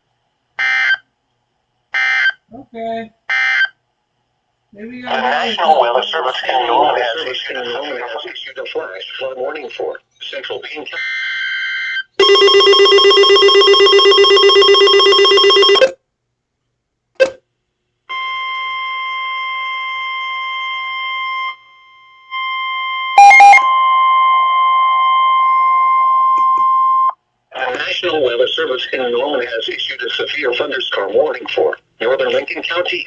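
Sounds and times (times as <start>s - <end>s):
data tone chirps: 12.2s - 15.9s, 23.2s - 23.6s
pulsing electronic alarm: 12.2s - 15.9s, 19.4s - 26.1s
steady high warning tone: 12.2s - 15.9s, 19.5s - 25.0s.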